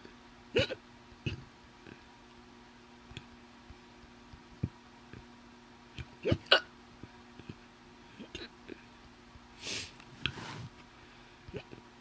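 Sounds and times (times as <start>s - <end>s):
person hiccuping: 0.6s - 1.4s, 6.2s - 6.7s, 11.5s - 11.8s.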